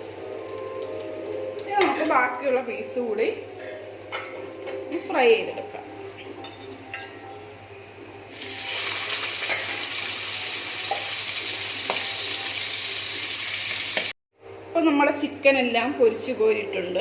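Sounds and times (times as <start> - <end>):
chicken sizzling in hot oil: 0.0 - 4.1, 8.3 - 14.2.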